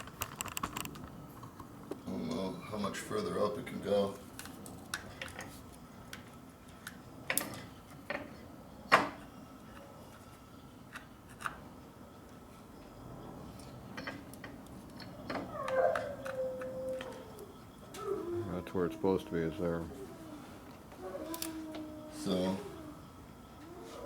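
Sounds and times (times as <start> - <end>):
clicks and knocks of parts: 0.0 - 2.0, 6.1 - 10.2.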